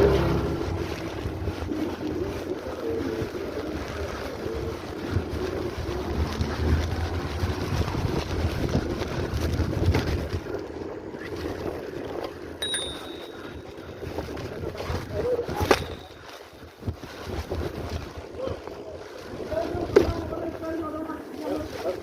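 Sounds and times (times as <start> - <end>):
wind noise on microphone: 0.0 - 22.0
short high beep: 12.6 - 13.8.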